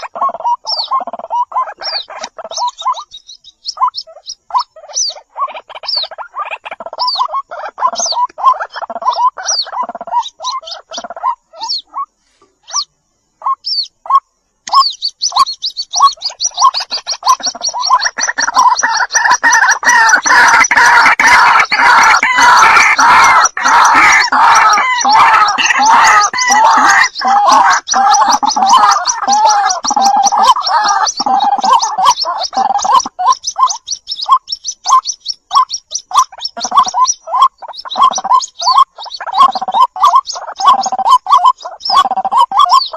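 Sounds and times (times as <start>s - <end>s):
waterhen gurgling calls: 0.0s - 3.1s, 13.4s - 42.9s.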